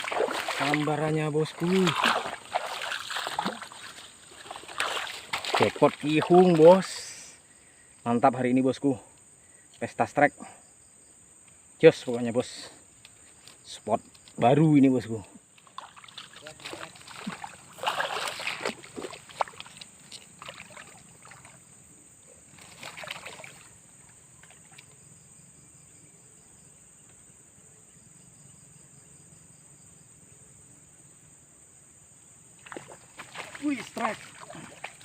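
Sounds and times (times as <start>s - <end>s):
water splashing and sloshing: 0.0s - 7.3s, 15.5s - 25.0s, 32.6s - 35.0s.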